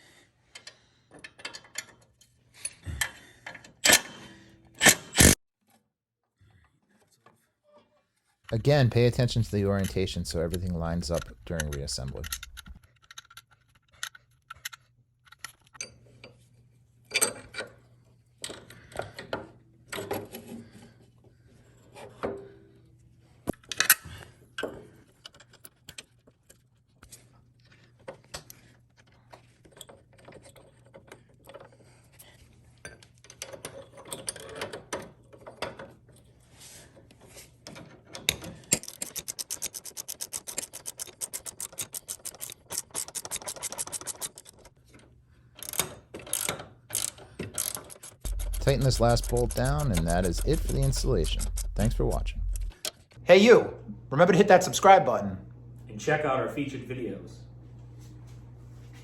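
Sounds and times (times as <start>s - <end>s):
ratchet wrench clicking: 45.6s - 52.8s
metal hardware clinks and scrapes: 47.0s - 52.8s.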